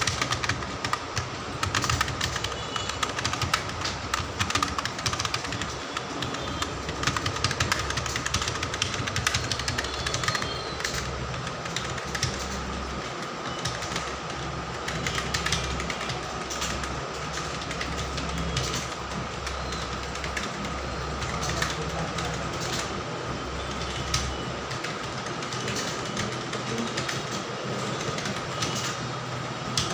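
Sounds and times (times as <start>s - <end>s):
keyboard typing clicks: 0.0s - 23.0s, 23.7s - 29.1s.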